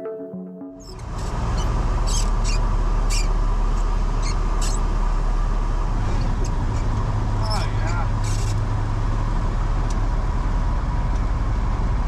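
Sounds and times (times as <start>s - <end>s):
background music: 0.0s - 1.1s.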